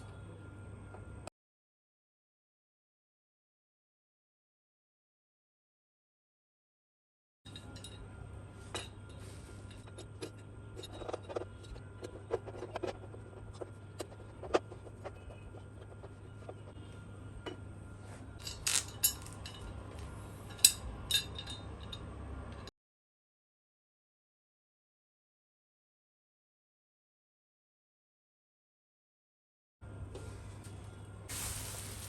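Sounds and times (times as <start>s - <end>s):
steady low hum: 0.0s - 1.3s, 7.5s - 22.7s
clinks of hard objects handled: 7.5s - 8.0s, 18.4s - 19.8s, 20.4s - 22.0s.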